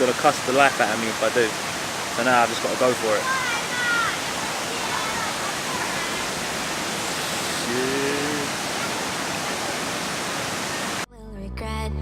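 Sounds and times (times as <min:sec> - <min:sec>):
waterfall rushing: 0:00.0 - 0:11.1
music: 0:11.1 - 0:12.0.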